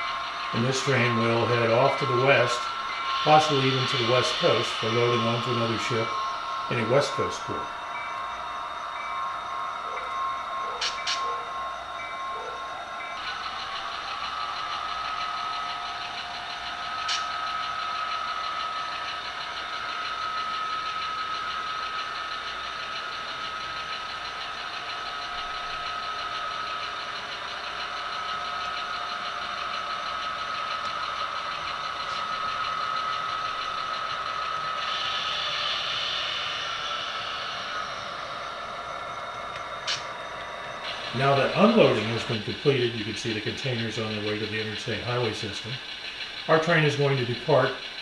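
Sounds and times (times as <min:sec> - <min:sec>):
model locomotive engine whine: 0:00.0 - 0:48.0
sharp click: 0:10.8 - 0:11.3, 0:17.1 - 0:17.3, 0:39.5 - 0:40.1.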